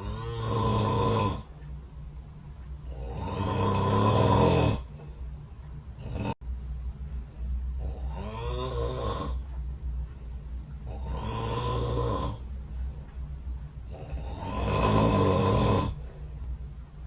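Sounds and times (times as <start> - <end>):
person snoring: 0.0 - 1.5, 2.9 - 4.9, 6.0 - 6.4, 7.8 - 9.4, 10.8 - 12.5, 13.9 - 16.0
steady low hum: 0.0 - 17.0.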